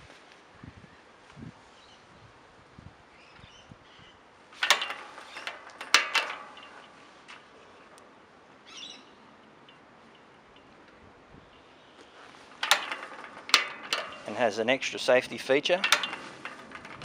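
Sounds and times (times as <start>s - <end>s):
metal gate clacking shut: 4.6s - 7.5s, 12.4s - 17.0s
gate rattling: 4.6s - 7.6s, 12.3s - 17.0s.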